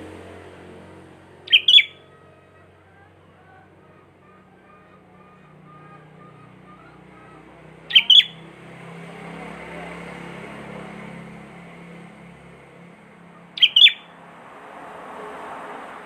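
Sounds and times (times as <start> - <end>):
bird chirping loudly: 1.4 - 8.4, 13.4 - 14.1
faint whistled bird notes: 1.5 - 2.0, 7.9 - 8.4, 13.6 - 14.0.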